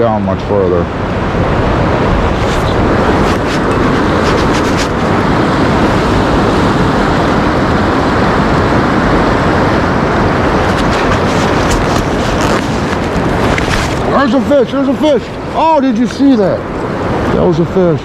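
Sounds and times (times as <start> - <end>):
creek water rushing: 1.0 - 17.9
wind buffeting microphone: 1.1 - 17.2.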